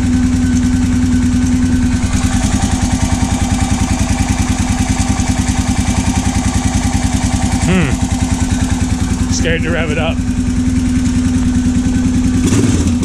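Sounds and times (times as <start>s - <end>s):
motorcycle engine idling: 0.0s - 13.0s.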